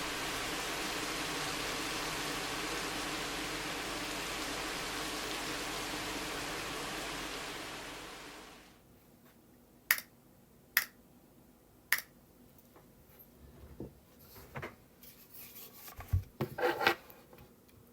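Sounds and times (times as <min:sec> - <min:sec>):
steady hiss: 0:00.0 - 0:08.8.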